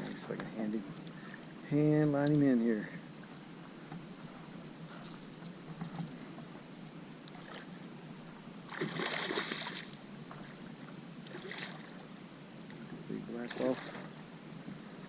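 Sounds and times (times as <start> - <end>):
fish splashing in water: 8.7 - 10.0.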